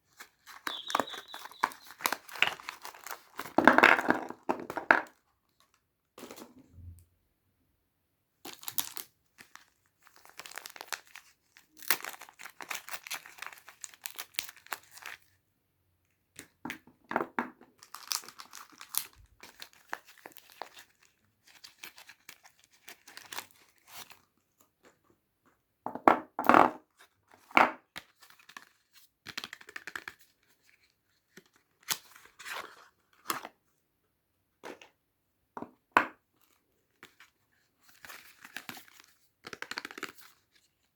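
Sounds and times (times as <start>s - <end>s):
wrapper tearing and crinkling: 10.2s - 11.2s, 11.8s - 15.1s, 17.8s - 20.7s.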